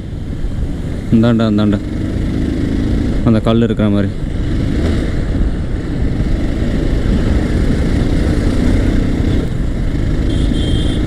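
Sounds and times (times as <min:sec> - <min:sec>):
road and wind noise: 0:00.0 - 0:11.0
motorcycle engine running: 0:04.1 - 0:11.0.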